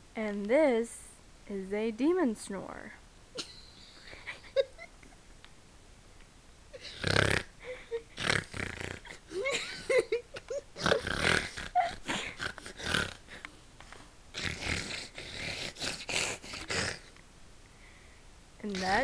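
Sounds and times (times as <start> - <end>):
person snoring harshly: 6.8 - 9.5, 10.8 - 13.4, 14.3 - 17.1.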